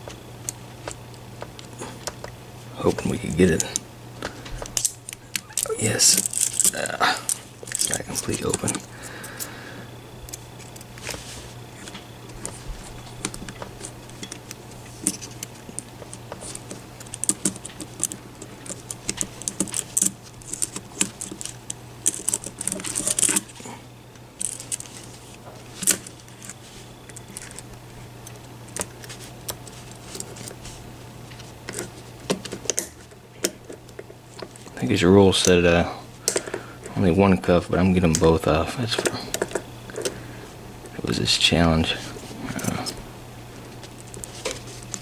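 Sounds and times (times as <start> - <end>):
metal clicks of handcuffs: 4.6 - 8.9.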